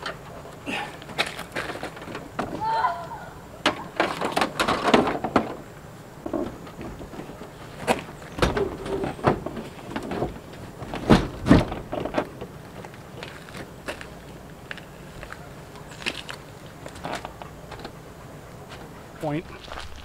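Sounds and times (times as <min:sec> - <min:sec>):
camper parts knocking and scraping: 0:00.0 - 0:02.8, 0:03.6 - 0:18.0
heavy thuds: 0:06.3 - 0:12.3.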